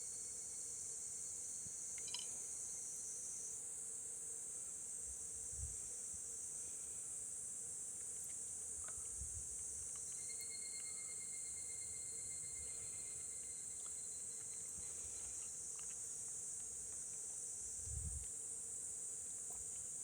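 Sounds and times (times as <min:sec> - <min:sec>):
crickets chirring: 0:08.2 - 0:20.0.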